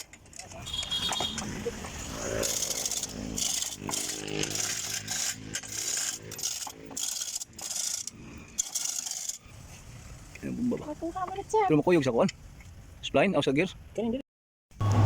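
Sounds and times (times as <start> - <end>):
rasping scraping on engine: 0.0 - 9.4.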